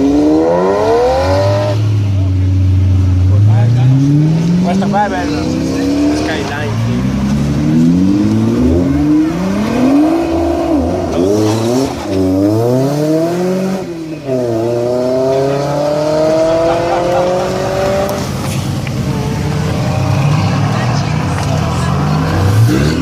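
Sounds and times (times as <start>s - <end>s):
sports car engine accelerating: 0.0s - 23.0s.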